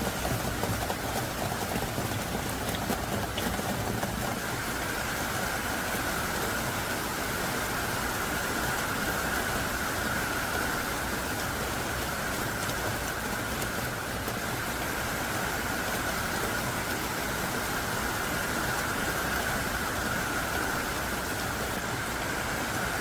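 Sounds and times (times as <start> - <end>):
raindrops ticking: 0.0 - 4.5
heavy rain pouring: 0.0 - 23.0.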